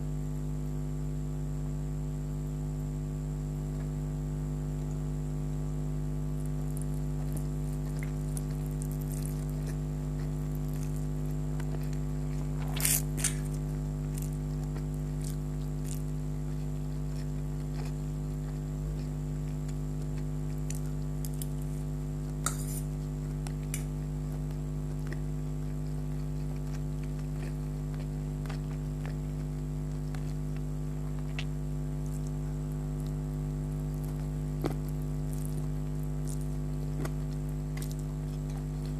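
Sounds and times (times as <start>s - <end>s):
steady electrical hum: 0.0s - 38.9s
wet chewing and squishing: 6.7s - 21.7s, 22.5s - 33.3s, 33.9s - 38.9s.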